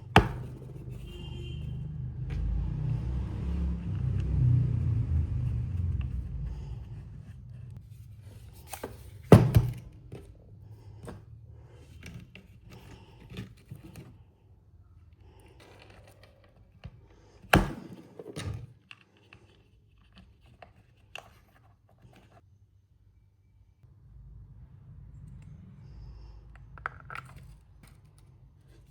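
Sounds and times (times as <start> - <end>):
low motor rumble: 0.0 - 8.6
loud thunks on hard surface: 0.2 - 0.6, 9.3 - 9.8.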